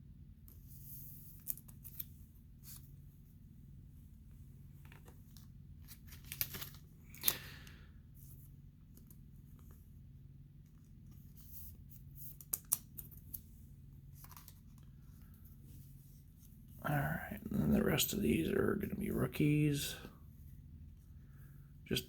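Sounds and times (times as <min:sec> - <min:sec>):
faint steady hum: 0:00.0 - 0:22.0
cards sliding into plastic sleeves: 0:04.8 - 0:07.8.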